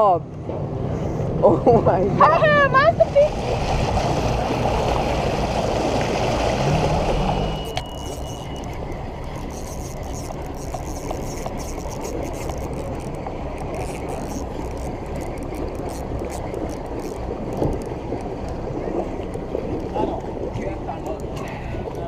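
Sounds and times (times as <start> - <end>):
boat engine rumble and hiss: 0.0 - 22.0
faint ticks: 7.7 - 18.6.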